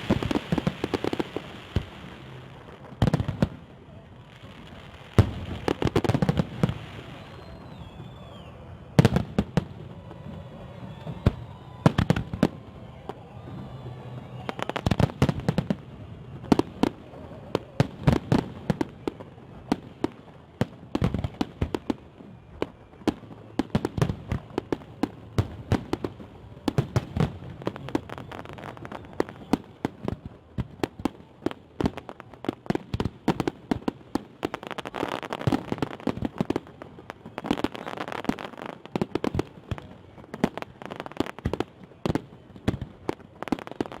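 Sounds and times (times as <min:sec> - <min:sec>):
fireworks bangs and crackling: 0:00.0 - 0:44.0.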